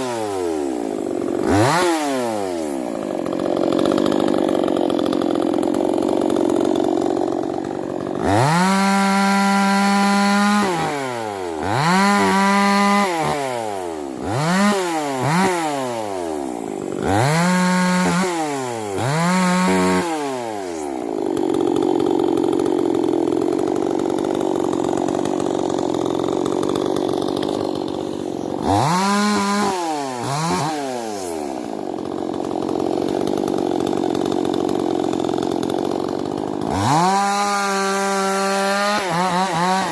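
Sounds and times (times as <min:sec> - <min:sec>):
chainsaw revving and idling: 0:00.0 - 0:39.9.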